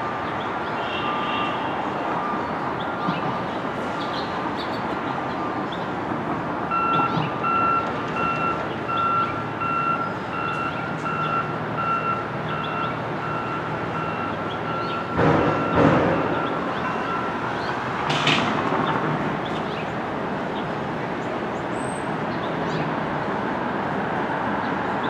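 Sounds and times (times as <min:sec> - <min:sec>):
low-pitched alarm beeps: 0:06.7 - 0:17.5
reversing alarm beeping: 0:06.7 - 0:17.7.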